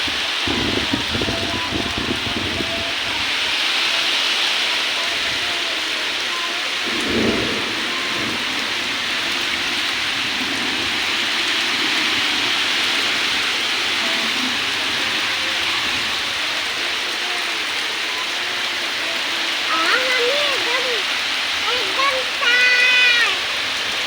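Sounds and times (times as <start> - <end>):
heavy rain pouring: 0.0 - 24.0.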